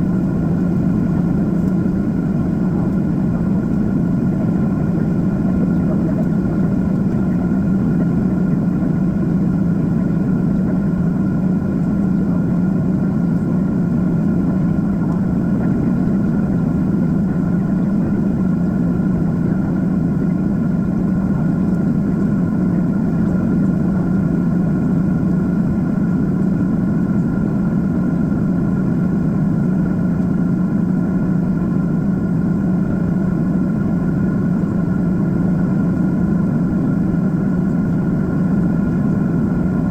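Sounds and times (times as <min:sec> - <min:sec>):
airplane cabin engine rush: 0:00.0 - 0:39.9.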